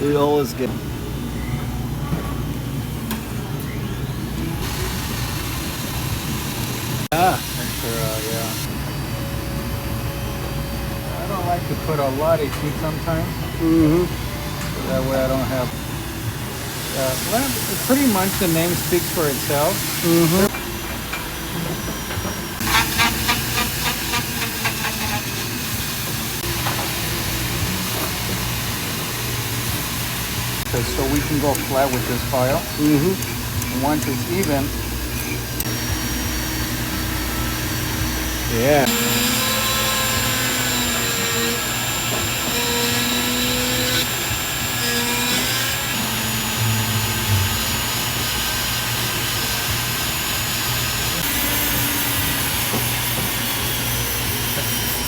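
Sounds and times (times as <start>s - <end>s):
soldering torch hissing: 16.7s - 20.5s, 22.6s - 26.5s.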